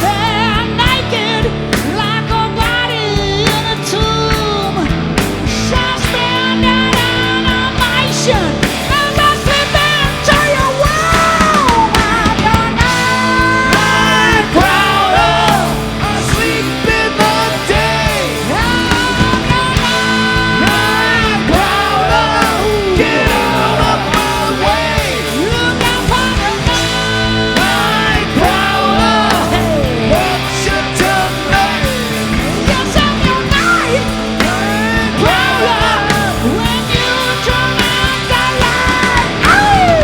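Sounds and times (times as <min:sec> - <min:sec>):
rock band playing slow blues: 0:00.0 - 0:40.0
lead guitar bending notes: 0:11.5 - 0:40.0.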